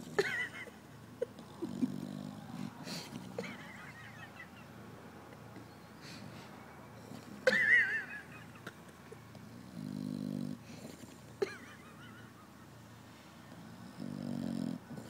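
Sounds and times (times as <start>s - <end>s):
low rumbling dog snore: 1.4s - 3.4s, 9.4s - 11.2s, 13.5s - 15.0s.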